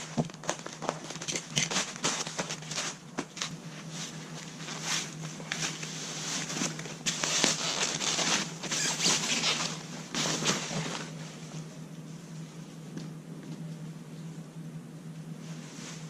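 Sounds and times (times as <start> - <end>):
steady low hum: 0.0 - 16.0
packaging rustling: 0.2 - 3.5.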